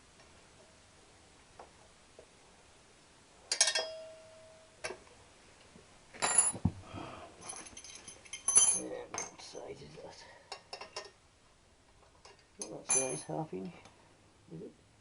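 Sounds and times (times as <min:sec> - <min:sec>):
metal hand tools clinking: 0:07.4 - 0:09.4, 0:12.6 - 0:13.4
tools rattling: 0:07.4 - 0:09.4.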